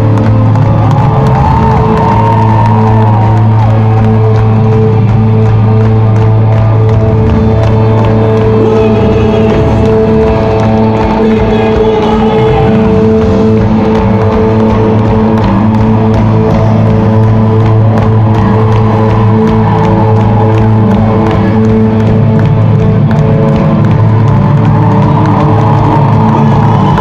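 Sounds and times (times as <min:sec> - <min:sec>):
droning bass: 0:00.0 - 0:27.0.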